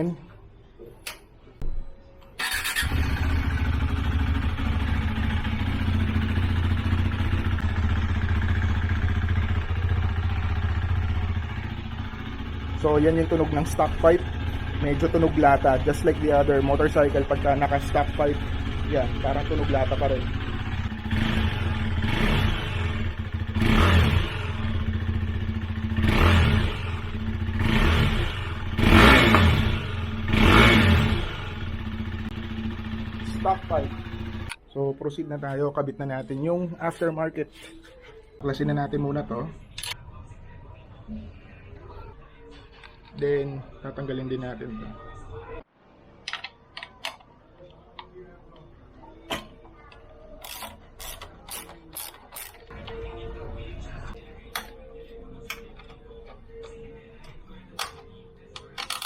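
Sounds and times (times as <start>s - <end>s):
motorcycle engine starting and idling: 2.3s - 34.6s, 49.2s - 59.0s.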